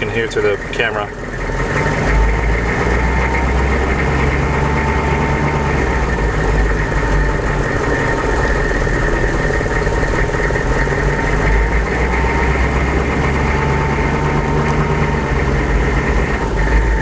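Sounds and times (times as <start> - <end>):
diesel engine running: 0.0 - 17.0
engine whine: 0.0 - 17.0.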